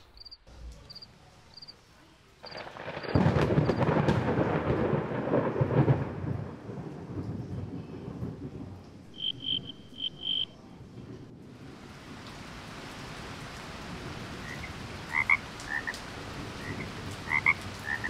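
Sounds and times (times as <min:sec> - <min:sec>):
thunder rumbling: 0:02.4 - 0:18.0
faint high chirps: 0:09.1 - 0:10.5.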